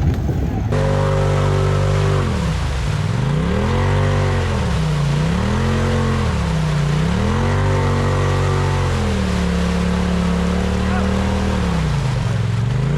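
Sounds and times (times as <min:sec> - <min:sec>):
off-road vehicle engine revving: 0:00.0 - 0:12.9
second engine running steadily: 0:00.0 - 0:12.9.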